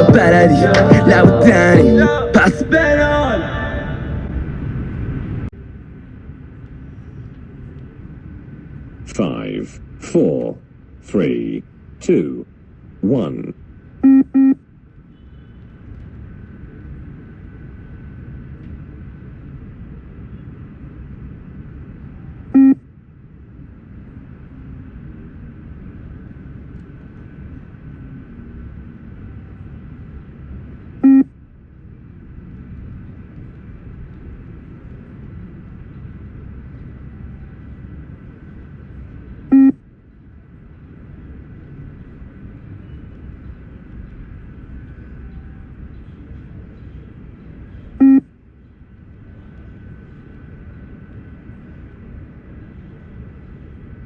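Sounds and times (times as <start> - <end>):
steady low rumble: 0.0 - 15.1, 15.7 - 54.0
electronic beeps: 14.0 - 14.6, 22.6 - 22.8, 31.0 - 31.3, 39.5 - 39.8, 48.0 - 48.3.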